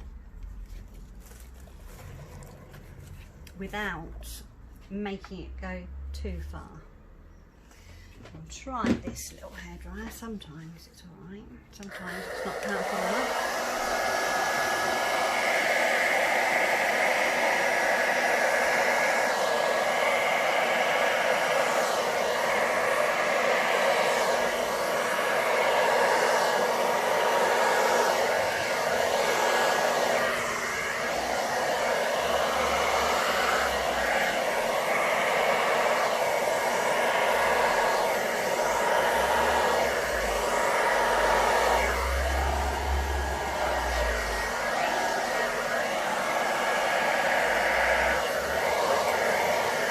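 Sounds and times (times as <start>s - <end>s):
hairdryer blowing: 11.8s - 49.9s.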